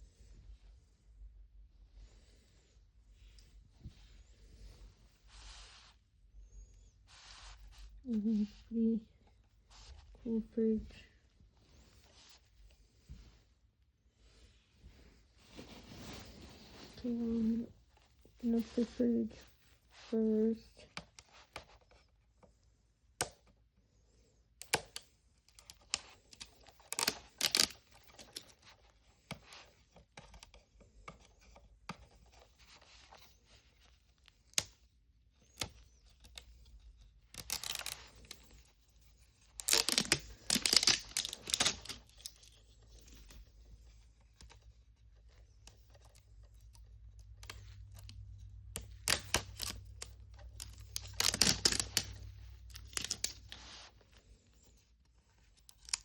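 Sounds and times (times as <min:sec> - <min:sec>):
plastic packaging crinkling: 0:25.8 - 0:28.5, 0:37.3 - 0:38.6, 0:39.5 - 0:42.8, 0:47.6 - 0:53.9
packaging ripping: 0:26.8 - 0:28.4, 0:37.4 - 0:38.4, 0:39.6 - 0:42.3, 0:48.8 - 0:53.6.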